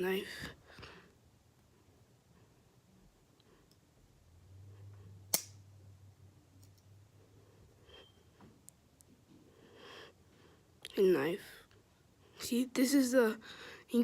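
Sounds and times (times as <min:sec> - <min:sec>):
sharp metallic click: 0:05.3 - 0:05.6.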